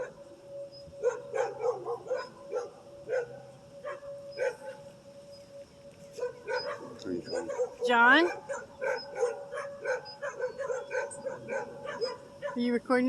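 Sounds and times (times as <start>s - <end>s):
dog barking: 1.0s - 4.8s, 6.2s - 12.7s.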